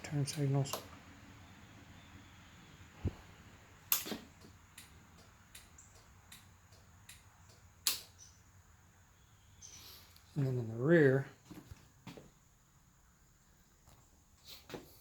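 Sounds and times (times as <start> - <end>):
sharp switch clicks: 3.9 - 8.2.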